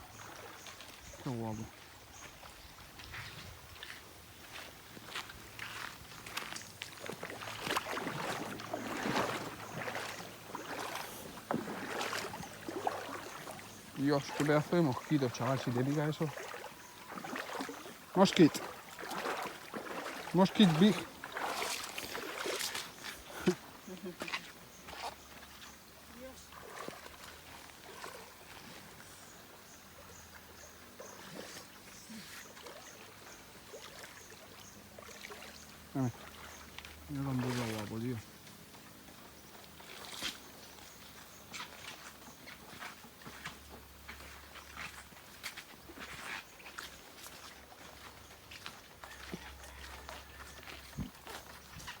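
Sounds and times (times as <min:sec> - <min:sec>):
footsteps on a trail: 0:02.2 - 0:25.9, 0:40.1 - 0:52.0.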